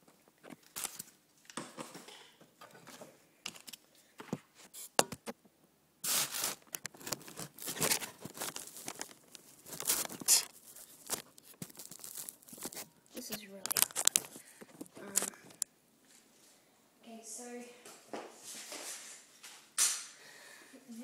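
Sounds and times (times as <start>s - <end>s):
plastic toy rustling and scraping: 6.0s - 15.7s.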